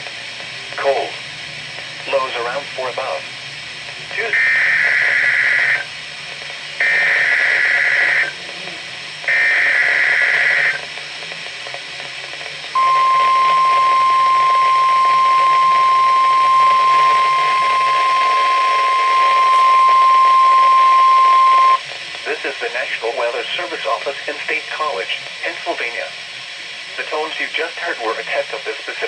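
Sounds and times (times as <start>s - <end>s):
data bursts: 12.8s - 21.8s
steady alert tone: 12.8s - 21.8s.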